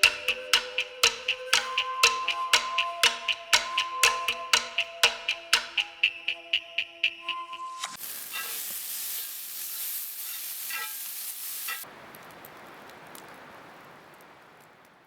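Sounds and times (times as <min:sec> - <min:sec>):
food sizzling in a pan: 0:08.0 - 0:11.9.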